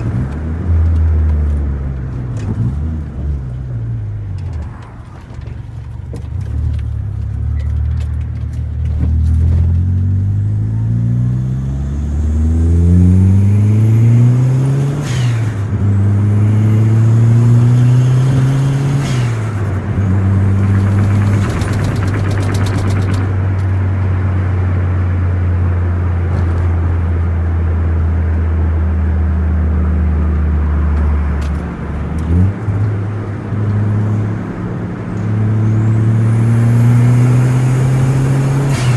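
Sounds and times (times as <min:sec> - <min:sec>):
car engine accelerating: 0:00.0 - 0:38.9
turbo flutter: 0:19.1 - 0:23.8.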